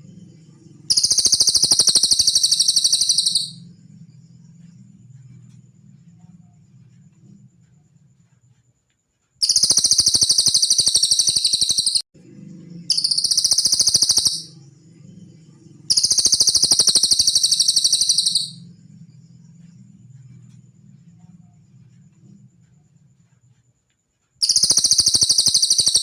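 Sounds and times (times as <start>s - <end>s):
faint low hum: 0.0s - 25.3s
songbird high fast trills: 0.9s - 3.6s, 9.4s - 12.0s, 12.9s - 14.6s, 15.9s - 18.7s, 24.4s - 26.0s.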